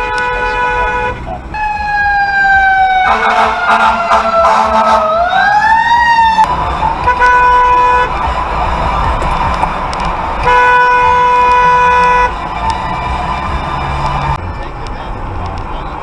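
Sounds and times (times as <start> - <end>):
vehicle horn honking: 0.0 - 2.2, 3.0 - 5.1, 6.5 - 13.2
emergency siren wailing: 0.0 - 14.7.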